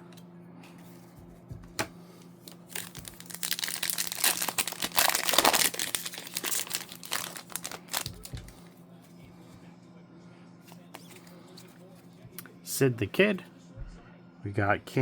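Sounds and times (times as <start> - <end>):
plastic wrapper crinkling and tearing: 2.4 - 8.7.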